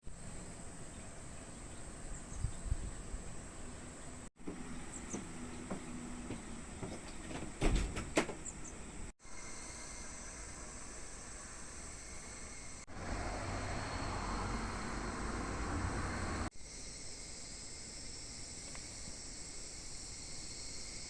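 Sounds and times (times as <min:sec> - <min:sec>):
clicks and knocks: 0:04.5 - 0:08.6
high-pitched hiss: 0:09.2 - 0:21.0.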